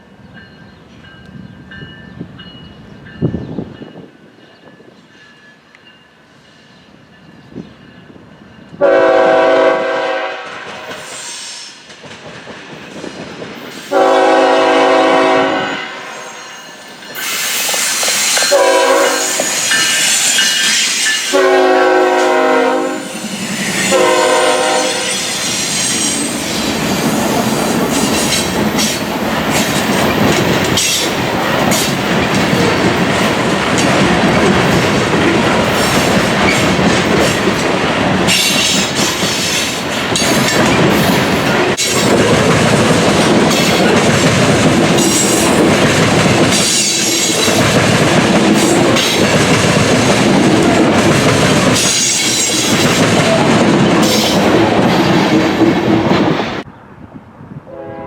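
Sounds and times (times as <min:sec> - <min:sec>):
train passing: 0:00.0 - 0:58.0
locomotive air horn blasts: 0:08.8 - 0:11.4, 0:13.9 - 0:16.4, 0:18.5 - 0:19.5, 0:21.3 - 0:25.3, 0:57.7 - 0:58.0.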